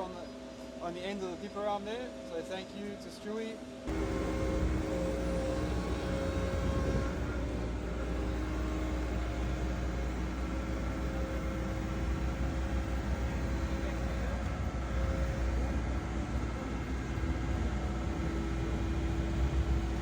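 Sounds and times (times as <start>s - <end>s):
excavator diesel engine running: 3.9s - 20.0s.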